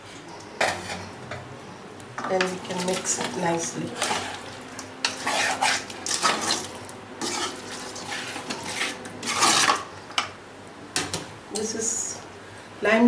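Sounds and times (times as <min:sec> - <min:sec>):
metal spoon scraping in pot: 0:00.6 - 0:01.2, 0:02.3 - 0:09.8.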